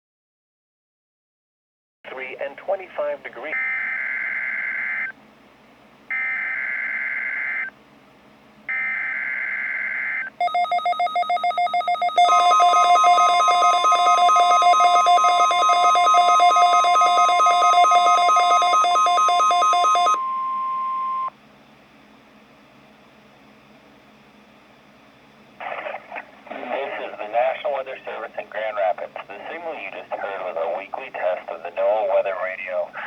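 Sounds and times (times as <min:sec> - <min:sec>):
steady warning alarm tone: 0:03.4 - 0:05.1, 0:06.1 - 0:07.7, 0:08.7 - 0:21.3
rapidly pulsing alarm beep: 0:03.5 - 0:05.1, 0:06.1 - 0:07.7, 0:08.7 - 0:21.3.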